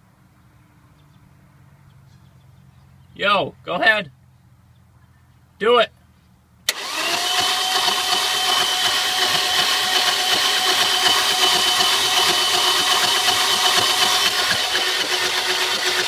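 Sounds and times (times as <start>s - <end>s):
starter motor click: 6.7s - 16.0s
starter motor cranking engine: 6.7s - 16.0s.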